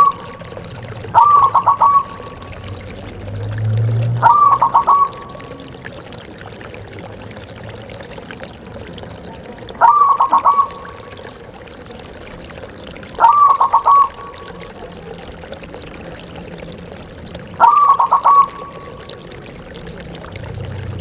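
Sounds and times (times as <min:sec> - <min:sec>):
dove cooing: 0:00.0 - 0:02.9, 0:04.2 - 0:06.0, 0:09.7 - 0:11.5, 0:13.1 - 0:15.8, 0:17.6 - 0:19.3.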